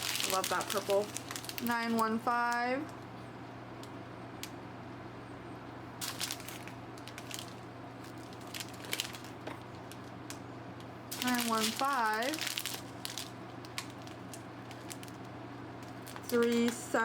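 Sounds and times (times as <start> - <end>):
plastic bags crinkling: 0.0 - 3.1, 6.0 - 10.4, 11.1 - 17.0
low fan hum: 0.0 - 17.0.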